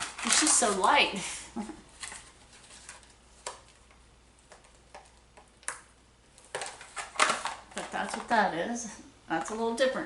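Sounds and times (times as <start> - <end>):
low hum from a voice: 7.7 - 10.0.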